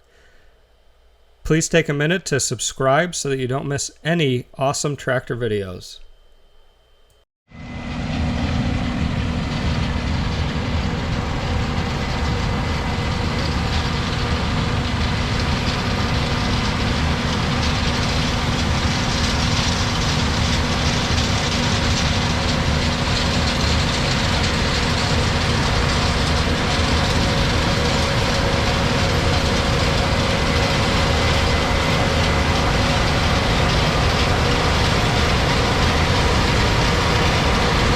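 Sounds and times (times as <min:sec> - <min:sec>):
machinery whining tones: 0:00.0 - 0:37.9
combine harvester engine droning: 0:07.6 - 0:37.9.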